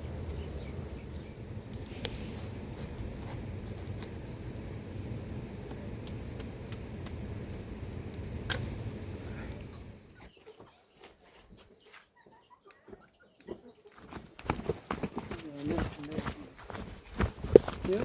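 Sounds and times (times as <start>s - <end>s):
low rumbling noise: 0.0s - 10.1s
chickens clucking: 10.1s - 14.8s.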